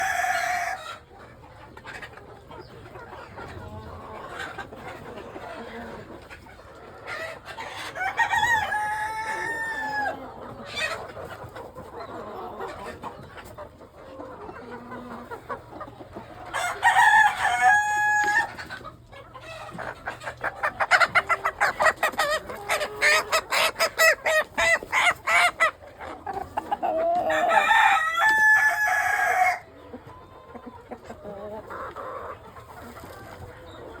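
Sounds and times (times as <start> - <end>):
flock of chickens: 0.0 - 34.0
rapid clucking: 18.5 - 27.9
rooster crowing: 27.3 - 29.6.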